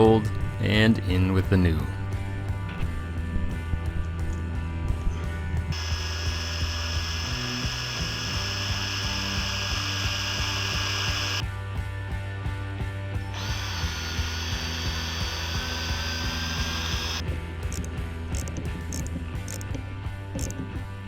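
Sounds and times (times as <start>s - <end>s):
background music: 0.0s - 21.0s
power drill whining: 5.7s - 11.4s, 13.4s - 17.2s.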